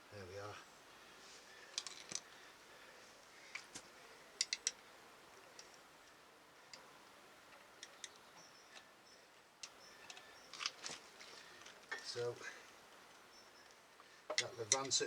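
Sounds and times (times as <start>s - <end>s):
metallic clicks of hand tools: 14.3s - 15.0s.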